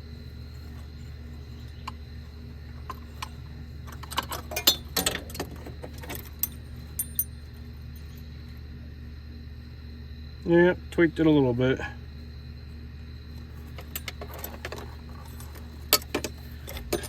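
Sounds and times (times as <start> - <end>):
steady low hum: 0.0 - 17.0
metal tools clinking: 2.8 - 8.2, 13.6 - 17.0.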